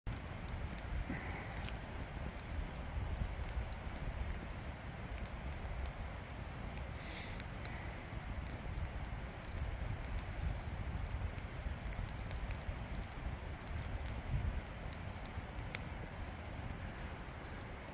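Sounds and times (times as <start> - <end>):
campfire crackling and popping: 0.1 - 17.9.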